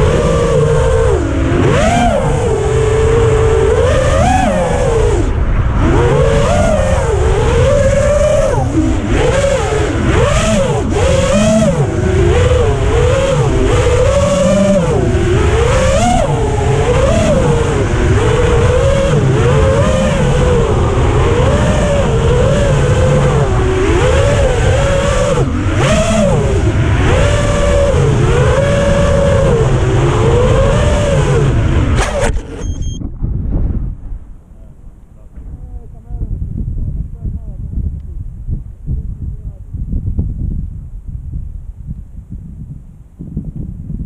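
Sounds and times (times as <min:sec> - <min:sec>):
quadcopter motors whining: 0:00.0 - 0:33.0.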